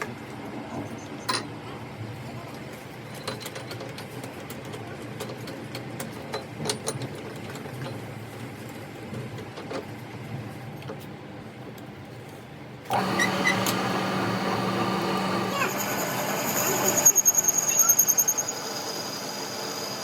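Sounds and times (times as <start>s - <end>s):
workshop machine humming: 12.9s - 20.0s.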